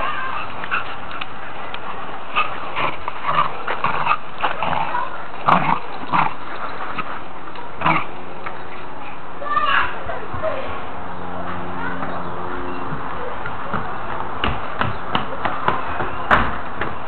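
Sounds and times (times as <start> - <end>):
dogs vocalising while playing: 0.0 - 9.2
steady background noise: 0.0 - 17.0.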